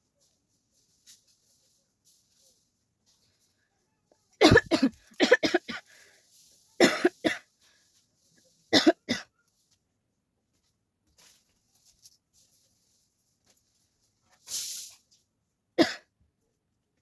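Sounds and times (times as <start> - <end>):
person coughing: 4.4 - 5.8, 6.8 - 7.4, 8.8 - 9.3, 15.8 - 16.1.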